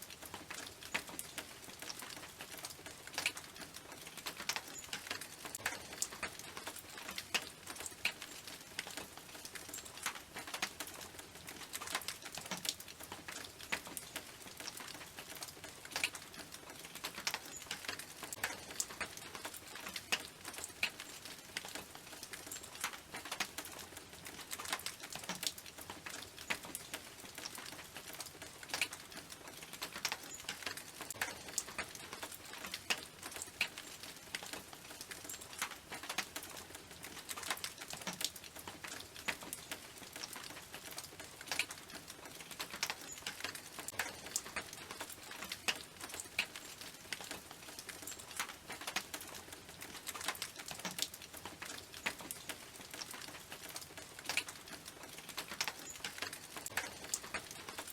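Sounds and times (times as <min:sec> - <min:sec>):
rain drops on a tin roof: 0:00.0 - 0:57.9.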